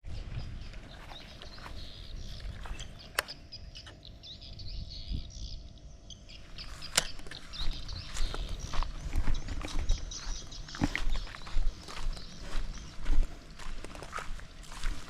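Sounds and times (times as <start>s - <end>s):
birds chirping: 0.0s - 15.0s
sharp clicks: 6.8s - 7.5s.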